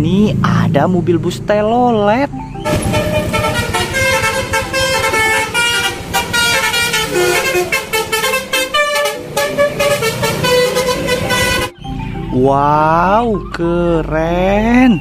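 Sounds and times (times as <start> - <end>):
bus horn playing melodic tune: 2.6 - 11.8.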